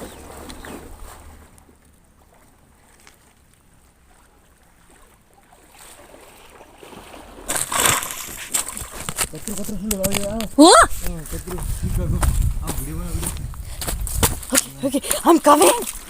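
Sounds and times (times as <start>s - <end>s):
water splashing in pond: 0.0s - 9.6s, 15.0s - 16.0s.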